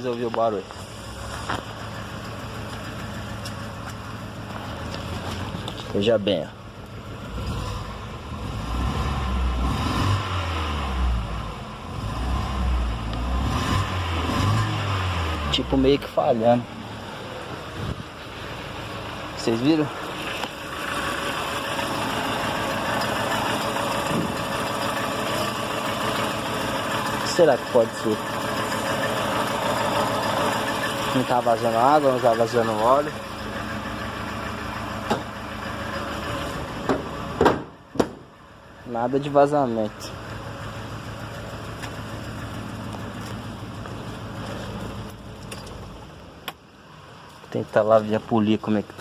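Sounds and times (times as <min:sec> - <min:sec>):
faint engine ticks: 0:00.0 - 0:07.4, 0:39.9 - 0:49.0
car engine running: 0:00.0 - 0:49.0.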